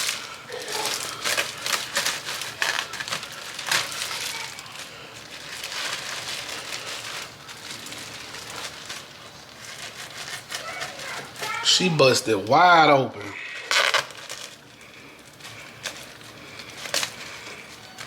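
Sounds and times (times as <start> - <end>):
meat crackling and tearing: 0.0 - 18.0.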